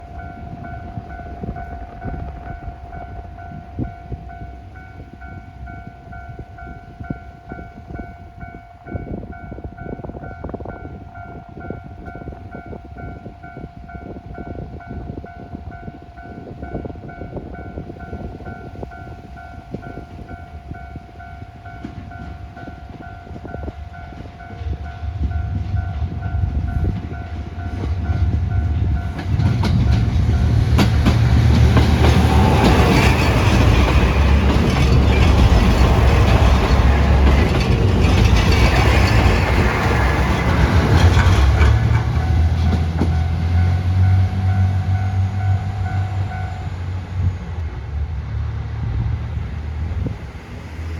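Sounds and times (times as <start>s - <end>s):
level crossing warning bell: 0.0s - 46.8s
diesel train engine drone: 0.0s - 50.9s
wheels clattering over rail joints: 25.6s - 44.6s.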